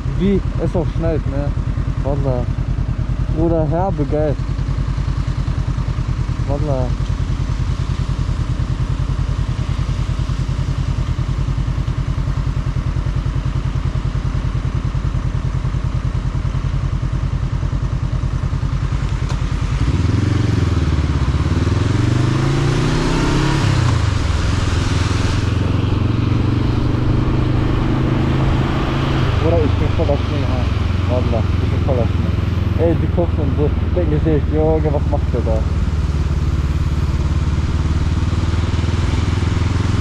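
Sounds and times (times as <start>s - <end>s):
motorcycle engine idling: 0.0s - 40.0s
motorcycle revving through gears: 18.5s - 40.0s.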